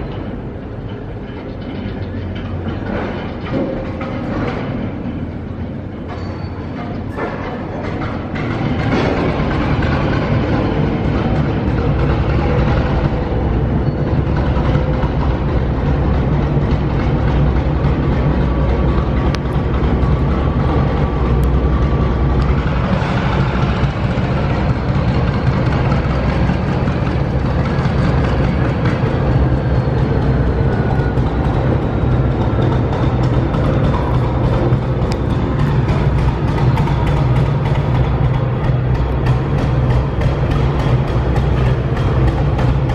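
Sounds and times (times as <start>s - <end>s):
diesel locomotive engine faltering: 0.0s - 42.9s.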